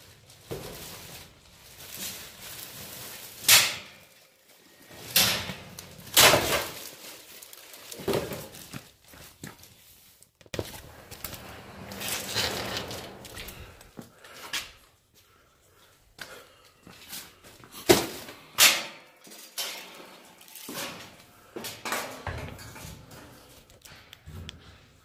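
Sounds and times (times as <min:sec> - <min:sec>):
bags rustling: 0:00.0 - 0:15.1, 0:19.2 - 0:21.6
bags and boxes thudding: 0:00.3 - 0:04.2, 0:04.9 - 0:09.4, 0:17.7 - 0:18.4.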